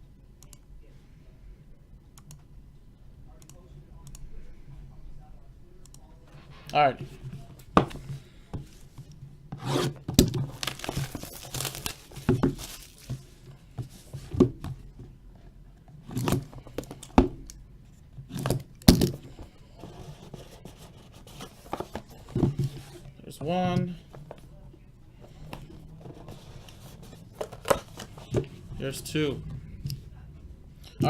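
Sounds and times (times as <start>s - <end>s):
plastic wrap crinkling: 10.4s - 13.4s.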